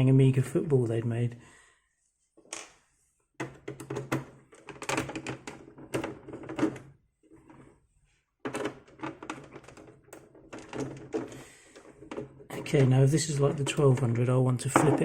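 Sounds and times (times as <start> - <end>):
plastic case clattering: 3.4 - 6.9, 8.4 - 15.0.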